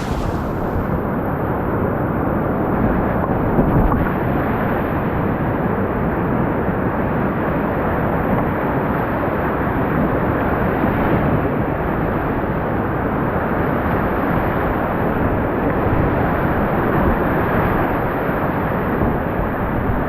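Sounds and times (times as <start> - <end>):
whitewater rushing: 0.0 - 1.3.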